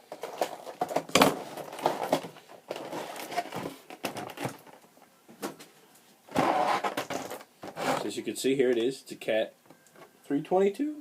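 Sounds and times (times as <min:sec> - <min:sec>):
packaging crinkling: 0:00.1 - 0:04.8.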